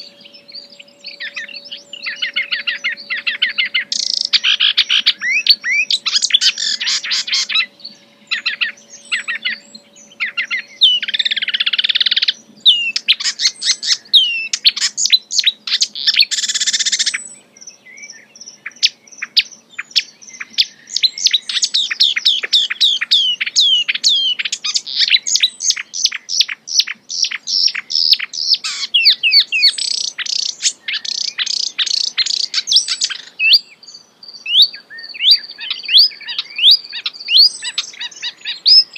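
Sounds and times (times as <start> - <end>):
songbird singing: 0.0 - 38.9.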